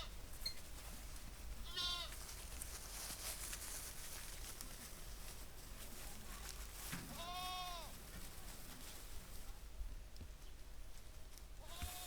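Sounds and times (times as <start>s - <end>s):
goat bleating: 1.6s - 2.1s, 7.2s - 7.9s, 11.6s - 12.0s.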